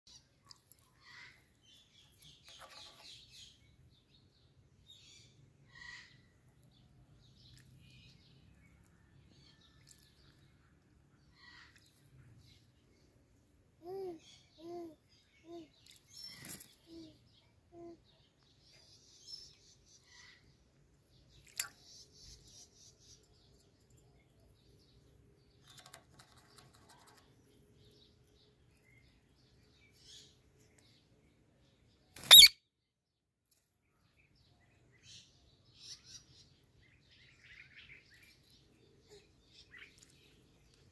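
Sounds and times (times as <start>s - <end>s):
faint bird chirps: 0.1s - 32.7s
parrot chirping: 32.2s - 32.6s.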